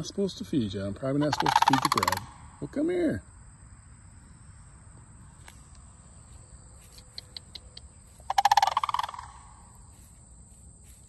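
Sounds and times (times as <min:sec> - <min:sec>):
crane rattling call: 0:01.2 - 0:02.4, 0:08.3 - 0:09.4.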